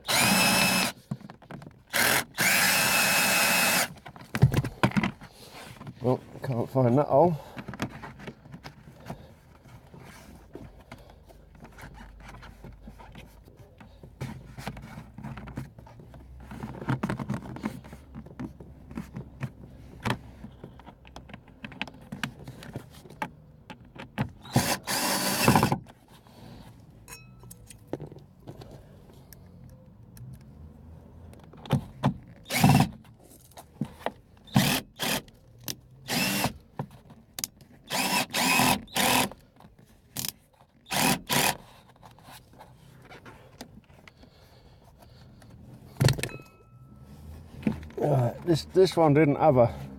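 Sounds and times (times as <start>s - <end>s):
cordless drill running: 0.0s - 1.0s, 1.9s - 3.9s, 24.4s - 25.7s, 32.5s - 32.9s, 34.5s - 35.2s, 36.0s - 36.6s, 37.9s - 39.4s, 40.9s - 41.6s.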